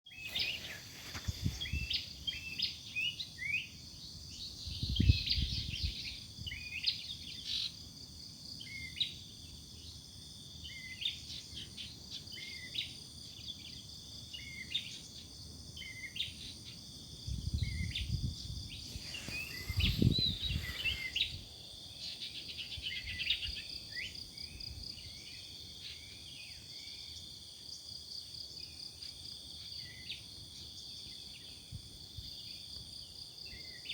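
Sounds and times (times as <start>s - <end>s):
birds chirping and singing: 17.6s - 27.1s.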